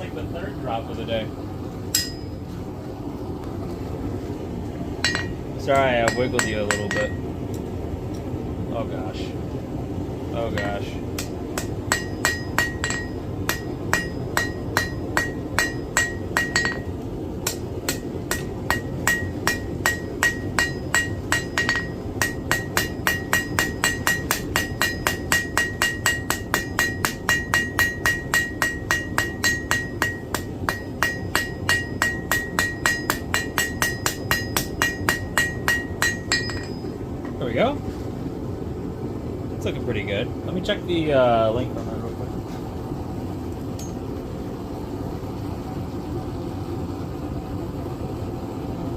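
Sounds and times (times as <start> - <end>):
hammer striking iron on anvil: 1.9 - 2.4, 5.0 - 7.2, 10.5 - 37.4, 43.8 - 44.0.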